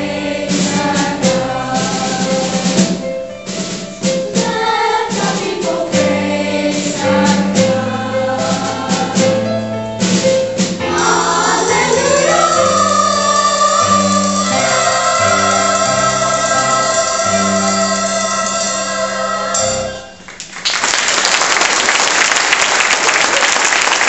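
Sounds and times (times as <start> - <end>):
choir singing gospel song: 0.0 - 3.2, 4.1 - 9.8, 10.8 - 20.2.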